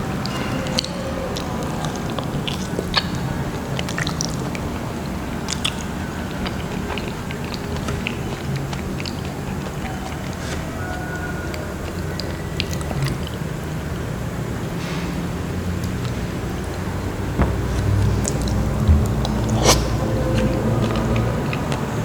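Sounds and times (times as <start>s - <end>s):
wet chewing smacks: 0.1s - 14.0s, 15.8s - 22.0s
steady low hum: 12.4s - 22.0s
mouth clicks: 17.4s - 22.0s.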